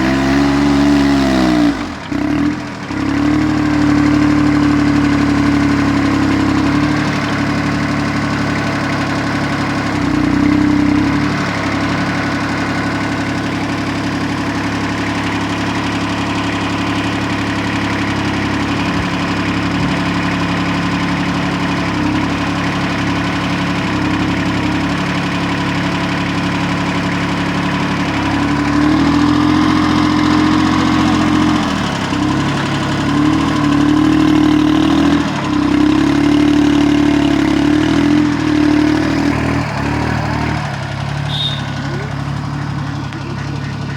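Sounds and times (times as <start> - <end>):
tractor diesel engine running: 0.0 - 43.9.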